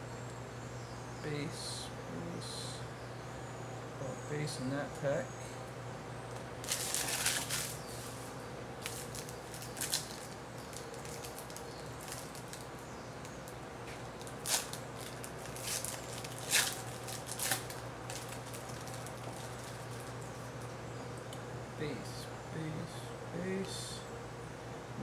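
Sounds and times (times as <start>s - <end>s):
steady low hum: 0.0s - 25.0s
trading cards rustling: 6.6s - 12.8s, 14.2s - 20.4s.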